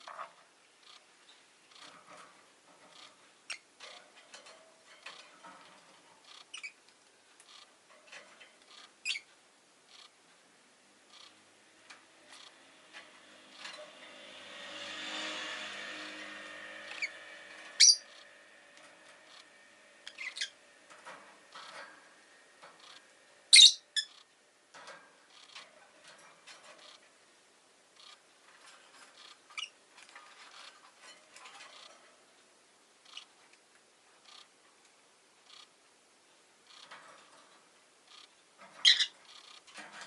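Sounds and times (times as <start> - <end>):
lovebird chirping: 6.2 - 6.8, 8.7 - 9.3, 16.9 - 18.3, 20.0 - 21.8, 22.8 - 24.2, 38.1 - 39.6
car passing: 11.7 - 21.5.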